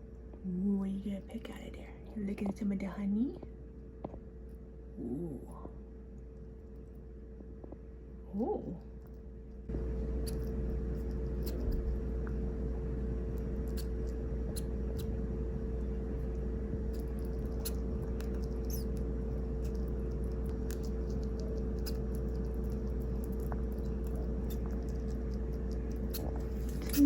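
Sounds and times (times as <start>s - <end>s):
low hum: 0.0s - 27.0s
small animal chewing clicks: 8.6s - 15.2s, 16.2s - 27.0s.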